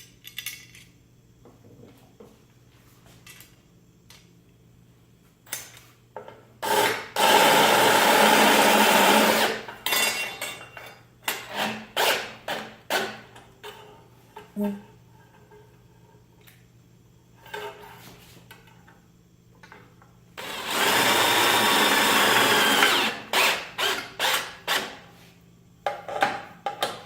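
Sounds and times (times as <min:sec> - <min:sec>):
power drill running: 0:06.6 - 0:09.6, 0:20.4 - 0:24.9.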